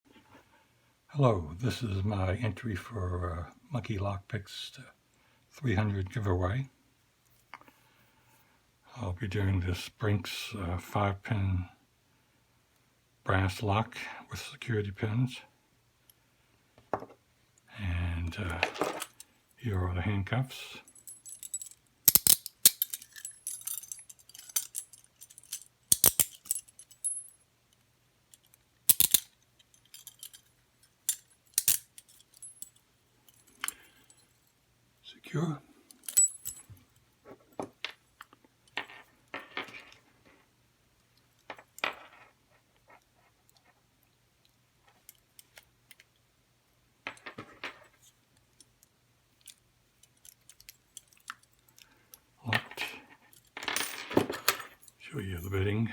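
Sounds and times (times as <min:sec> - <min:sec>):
handcuffs clinking: 0:20.9 - 0:27.4, 0:28.3 - 0:34.5, 0:35.9 - 0:36.7, 0:49.4 - 0:51.9
padlock and key clicking: 0:21.1 - 0:27.3, 0:28.9 - 0:29.3, 0:31.1 - 0:32.7, 0:36.0 - 0:36.6.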